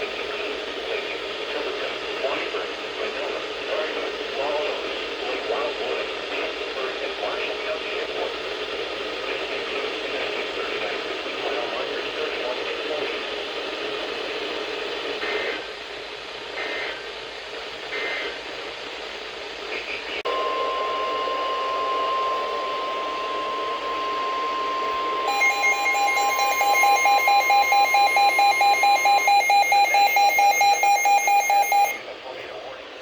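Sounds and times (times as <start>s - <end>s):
data bursts: 20.3s - 32.0s
rapid receiver alarm beeps: 20.3s - 32.0s
steady warning alarm tone: 20.3s - 32.0s.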